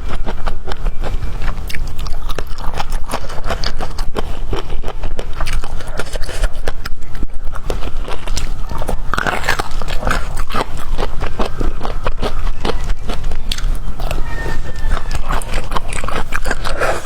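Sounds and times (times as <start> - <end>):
chewing bamboo crunches: 0.0 - 17.0.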